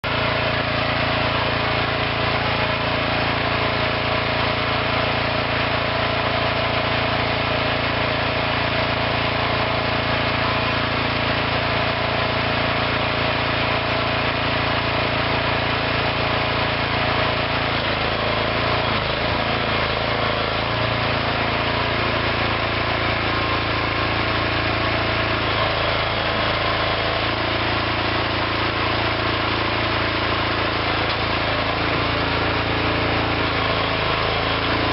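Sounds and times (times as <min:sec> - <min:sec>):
small engine running: 0:00.0 - 0:34.9.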